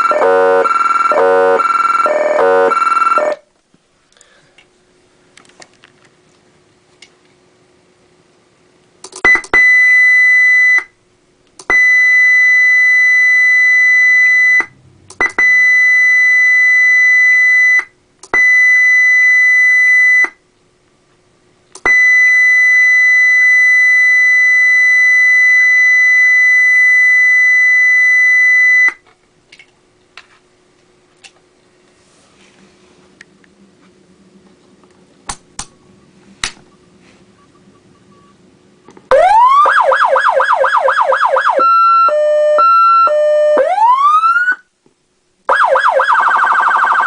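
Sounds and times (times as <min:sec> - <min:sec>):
electronic siren steady buzzy tone: 0:00.0 - 0:03.4, 0:11.7 - 0:17.8, 0:21.9 - 0:29.0, 0:39.1 - 0:44.7, 0:45.5 - 0:47.0.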